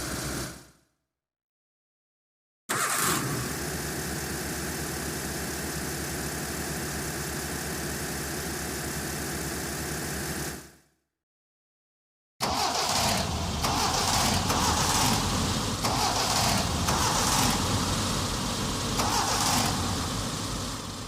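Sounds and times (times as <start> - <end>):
car engine starting and idling: 2.7 - 5.1, 12.4 - 21.0.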